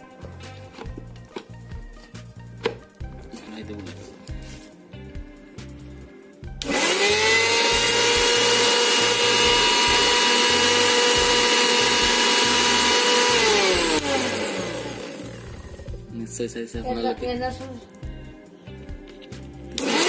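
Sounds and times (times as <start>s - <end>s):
mixer grinder motor whining: 6.6s - 16.0s, 19.7s - 20.0s.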